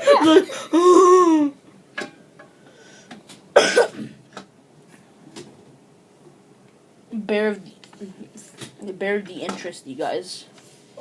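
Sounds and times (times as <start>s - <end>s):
person coughing: 0.0s - 1.4s, 3.6s - 4.2s.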